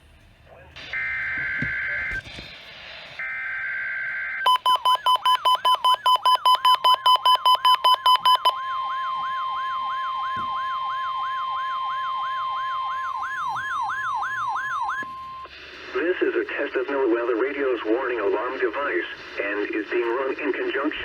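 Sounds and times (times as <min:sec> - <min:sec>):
warning alarm tone: 0:03.2 - 0:15.5
siren-like sweeping tone: 0:08.0 - 0:15.4.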